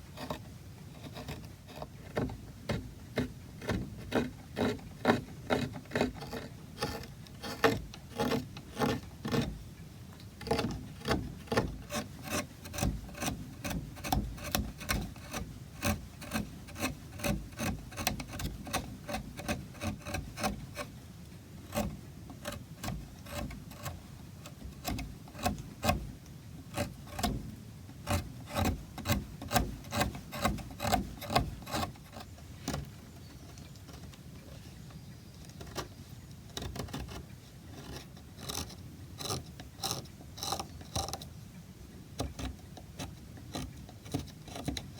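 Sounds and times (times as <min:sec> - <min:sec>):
carving tool rasping on wood: 0:00.1 - 0:09.7, 0:10.4 - 0:21.0, 0:21.7 - 0:32.9, 0:37.8 - 0:41.2, 0:42.2 - 0:44.9.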